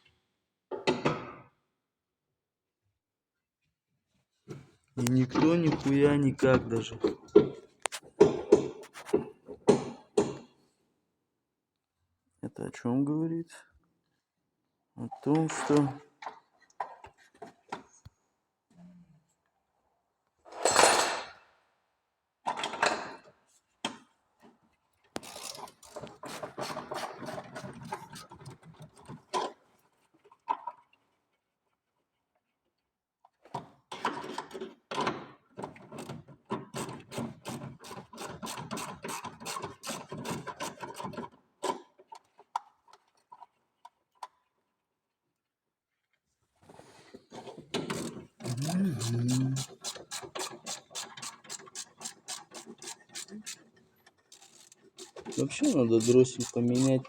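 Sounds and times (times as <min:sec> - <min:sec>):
ratchet wrench clicking: 0:25.2 - 0:25.6, 0:48.0 - 0:53.6, 0:54.3 - 0:57.0.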